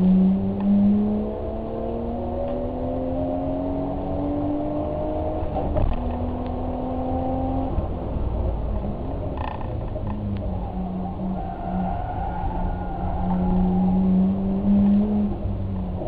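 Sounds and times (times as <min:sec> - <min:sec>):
car engine running under load: 0:03.5 - 0:16.0.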